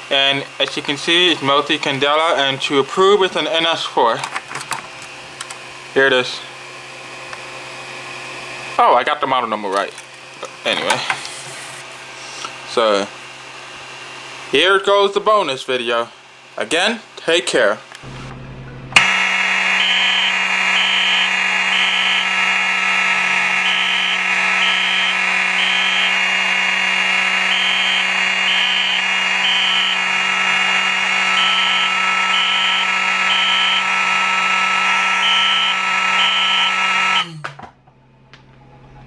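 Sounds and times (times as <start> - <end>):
steady buzzing alarm horn: 0.0 - 3.8, 19.0 - 37.4
pulsing high alarm beeps: 19.0 - 37.4.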